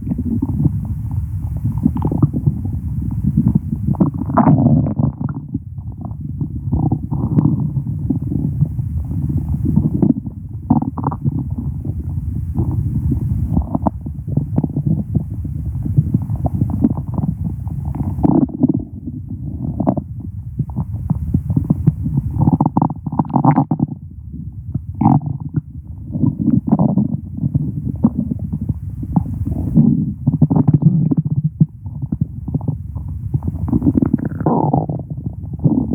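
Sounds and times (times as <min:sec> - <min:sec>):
stomach growling: 0:00.0 - 0:35.9
stomach gurgles: 0:00.0 - 0:35.9.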